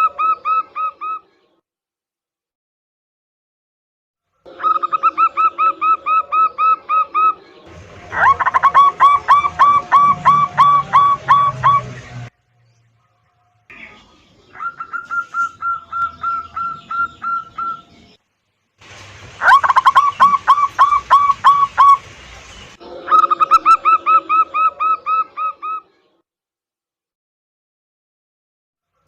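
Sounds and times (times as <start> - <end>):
dove cooing: 0.0 - 1.3, 4.5 - 12.3, 13.8 - 18.2, 19.4 - 22.0, 23.0 - 25.9.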